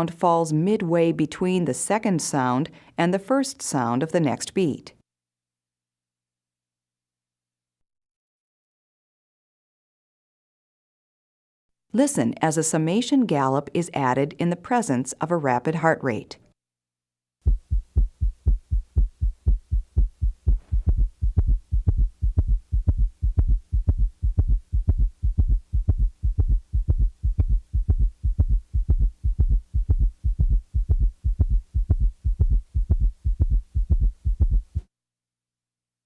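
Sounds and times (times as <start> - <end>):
rapid galloping heartbeat: 17.4 - 34.9.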